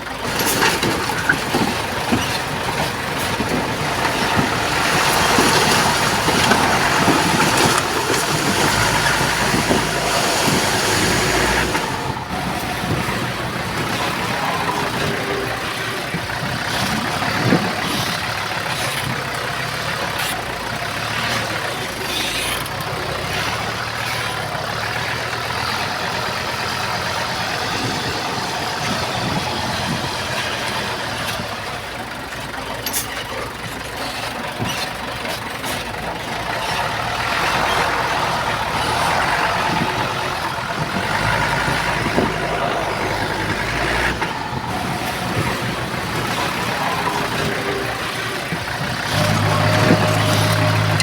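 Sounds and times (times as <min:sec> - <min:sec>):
heavy diesel engines running: 0:00.0 - 0:51.0
low engine drone: 0:37.6 - 0:51.0.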